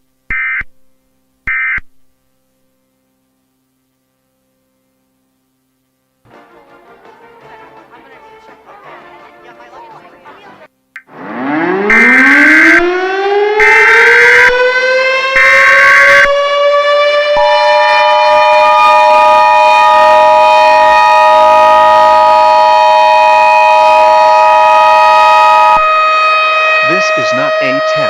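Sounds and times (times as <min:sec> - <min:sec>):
civil defense siren: 0:11.1 - 0:28.0.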